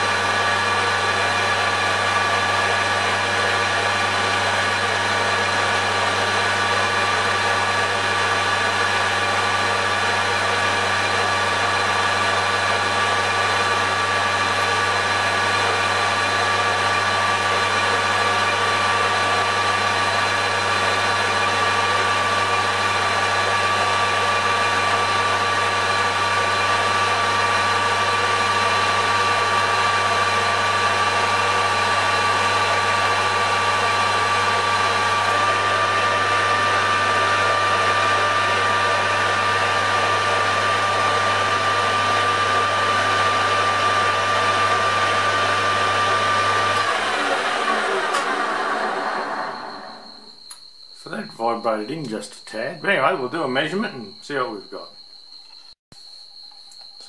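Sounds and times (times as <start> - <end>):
metal lathe running: 0.0 - 50.3.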